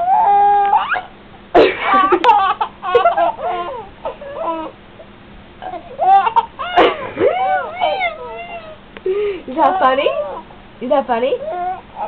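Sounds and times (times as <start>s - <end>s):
young child laughing and babbling: 5.6s - 8.8s.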